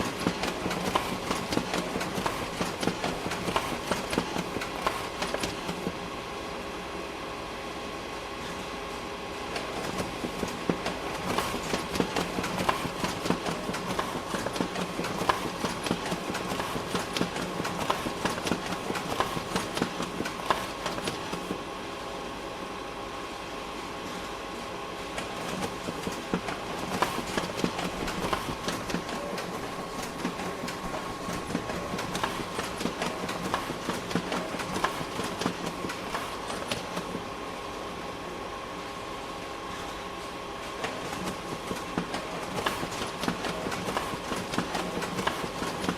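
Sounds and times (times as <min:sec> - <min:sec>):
printer rattling clatter: 0:00.0 - 0:06.0, 0:09.5 - 0:21.6, 0:25.1 - 0:37.3, 0:40.7 - 0:45.9
printer mechanical hum: 0:00.0 - 0:45.9.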